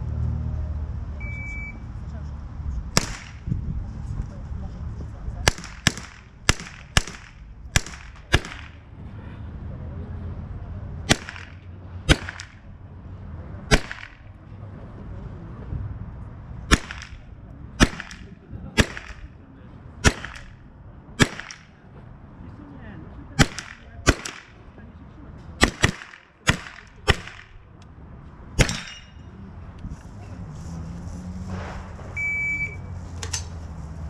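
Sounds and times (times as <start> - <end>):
small rifle shots: 3.0 - 3.5, 5.5 - 8.8, 11.1 - 12.6, 13.7 - 14.3, 16.7 - 17.2, 17.8 - 19.3, 20.0 - 20.6, 21.2 - 21.7, 23.4 - 24.6, 25.6 - 27.6, 28.6 - 29.1.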